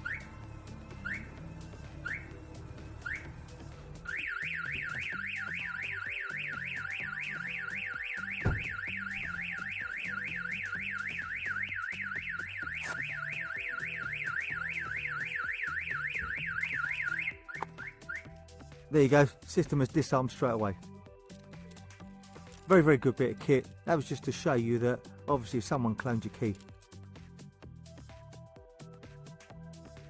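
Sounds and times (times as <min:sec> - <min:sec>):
car alarm warbling siren: 0:00.0 - 0:18.3
car alarm rising chirp: 0:00.0 - 0:18.5
thump: 0:08.4 - 0:08.8.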